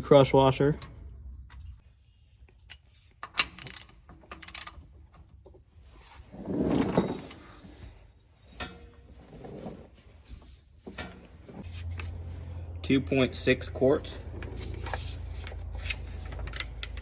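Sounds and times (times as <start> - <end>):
rattling scrape: 5.8 - 12.6, 13.8 - 17.0
hand tools clinking and rattling: 6.5 - 12.0.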